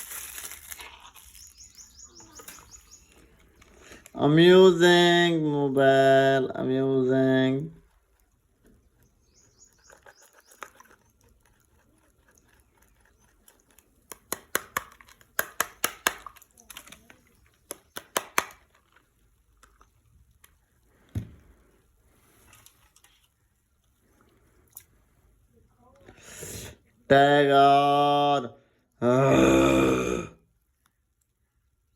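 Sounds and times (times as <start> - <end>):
plastic bag tearing: 0.0 - 1.8
plastic bag crackling: 0.0 - 2.0.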